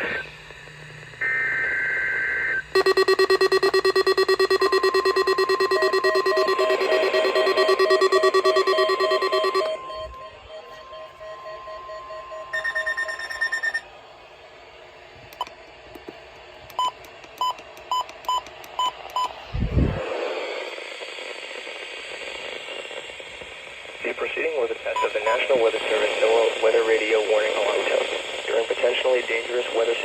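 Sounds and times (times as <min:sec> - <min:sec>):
faint steady warning tone: 0:00.0 - 0:19.4, 0:24.0 - 0:30.0
rapid pulsing alarm beeps: 0:01.9 - 0:13.9, 0:16.7 - 0:19.4, 0:24.9 - 0:26.6
short beeps: 0:02.8 - 0:13.8.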